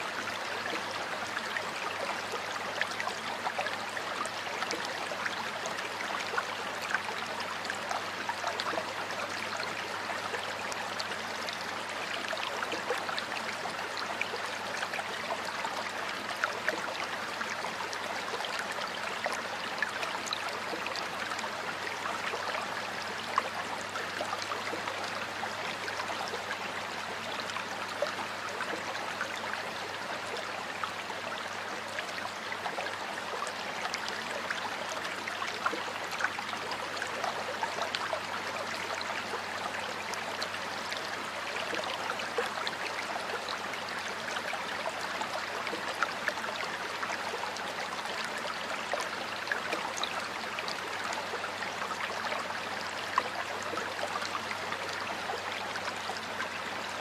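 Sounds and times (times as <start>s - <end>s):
stream running over rocks: 0.0s - 57.0s.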